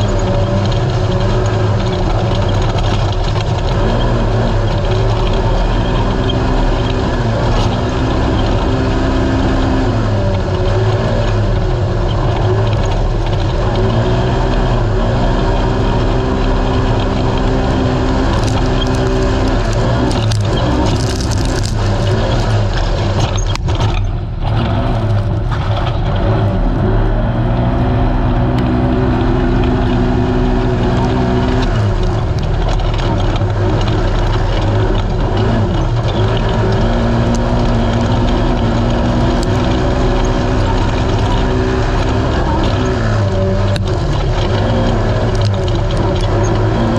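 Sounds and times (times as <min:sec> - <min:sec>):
engine revving hard: 0:00.0 - 0:46.9
steady rush of noise: 0:15.8 - 0:34.4
knocks over rough ground: 0:17.4 - 0:30.4.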